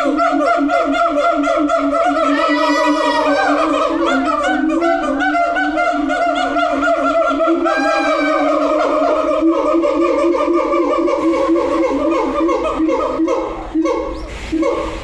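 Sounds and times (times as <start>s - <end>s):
siamangs hooting: 0.0s - 15.0s.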